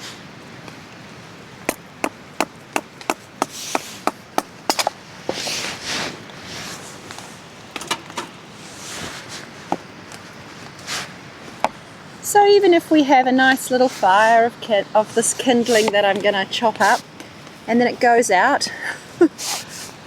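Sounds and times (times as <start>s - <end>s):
axe chopping wood: 1.7s - 5.0s.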